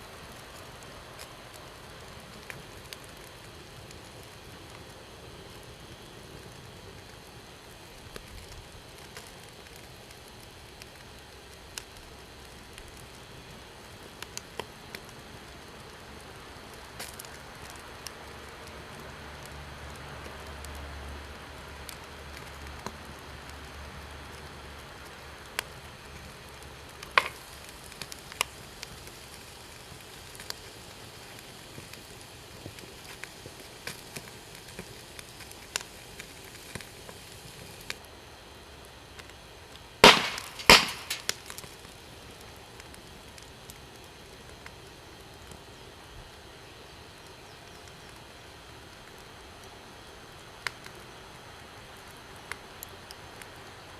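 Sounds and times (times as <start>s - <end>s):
fire crackling: 0.0s - 53.9s
fire popping and snapping: 0.0s - 53.9s.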